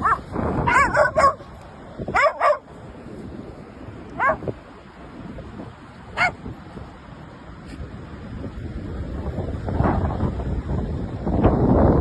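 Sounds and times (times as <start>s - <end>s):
dog yelping: 0.0s - 1.5s, 2.1s - 2.7s, 4.2s - 4.5s, 6.2s - 6.4s.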